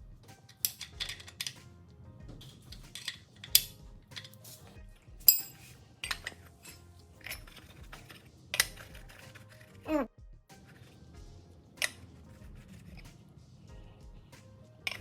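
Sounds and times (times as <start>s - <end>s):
quiet background music: 0.0s - 15.0s
metal objects clinking: 0.4s - 1.6s, 2.4s - 9.6s.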